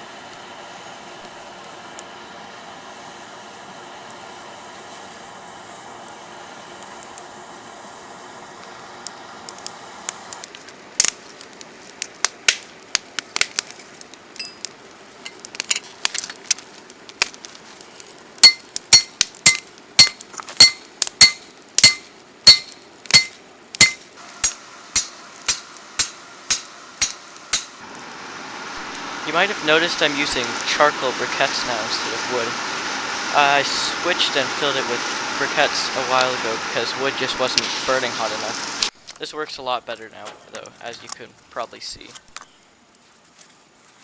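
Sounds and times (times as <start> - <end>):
steady hiss: 0.0 - 44.0
hammer striking metal on anvil: 18.4 - 27.8.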